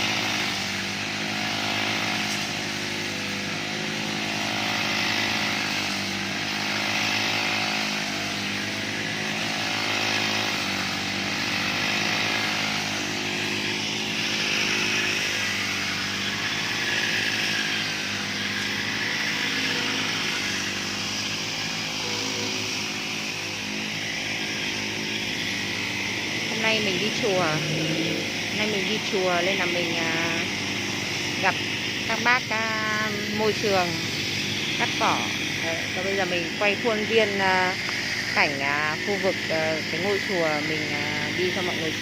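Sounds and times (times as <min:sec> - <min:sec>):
grass trimmers cutting grass: 0:00.0 - 0:42.0.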